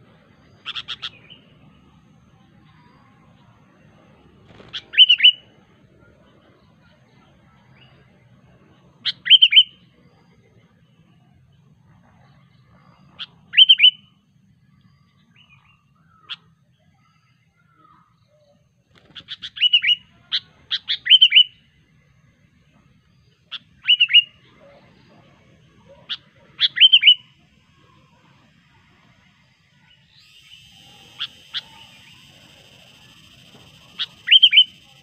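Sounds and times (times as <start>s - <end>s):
bird sharp quick chirps: 30.0s - 35.0s.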